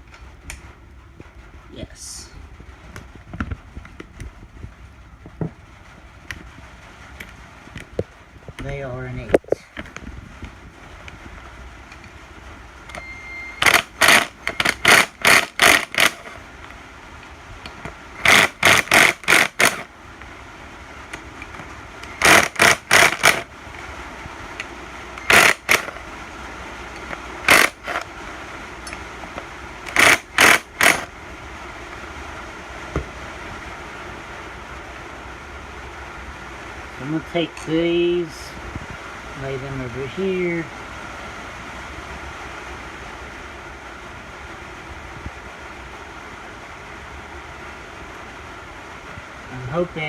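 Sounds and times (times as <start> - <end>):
socket ratchet clicking: 13.6 - 16.3, 18.2 - 19.9, 22.0 - 23.5, 25.2 - 26.0, 27.0 - 28.0, 29.9 - 31.1.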